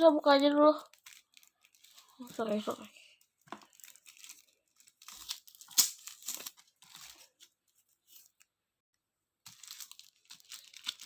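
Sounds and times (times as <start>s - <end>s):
packaging torn and crinkled: 0.8s - 2.2s, 3.6s - 7.4s, 9.5s - 11.0s.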